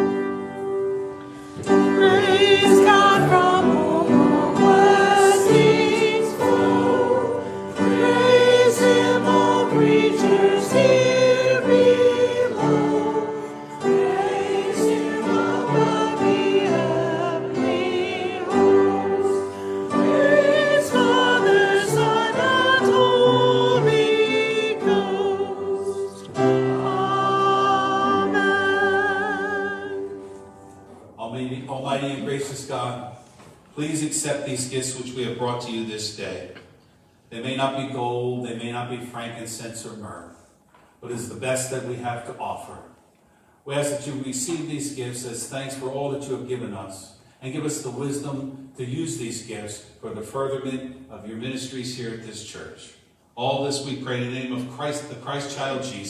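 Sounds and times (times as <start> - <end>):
held accompaniment chords: 0.0 - 33.2
person singing with vibrato: 1.7 - 30.7.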